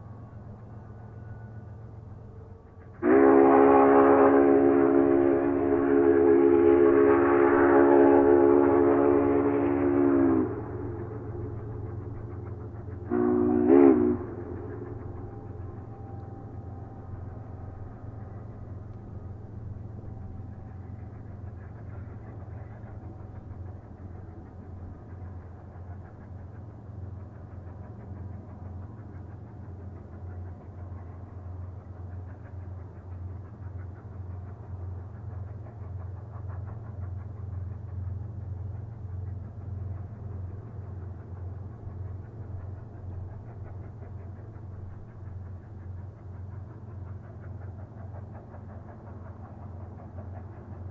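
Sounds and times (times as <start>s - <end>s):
distant steam train chugging: 0.0s - 50.9s
train whistle echo: 3.0s - 11.4s, 13.0s - 17.8s.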